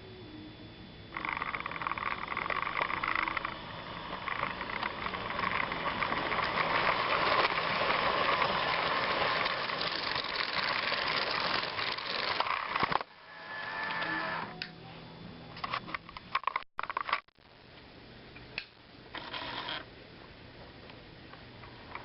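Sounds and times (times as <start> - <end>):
model train clattering whir: 1.1 - 14.6.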